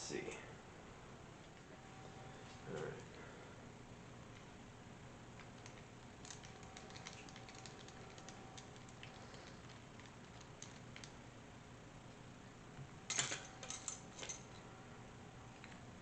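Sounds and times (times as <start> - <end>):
screwdriver and metal parts clicking: 13.1 - 14.5.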